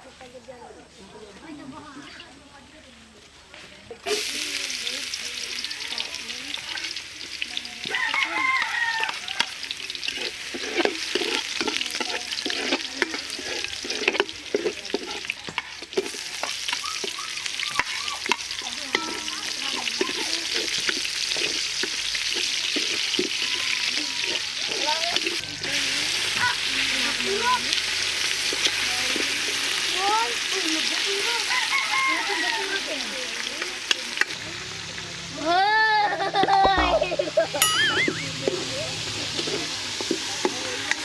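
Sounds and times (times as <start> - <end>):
food sizzling in a pan: 4.0 - 41.0
utensil clicking against pan: 7.8 - 25.4.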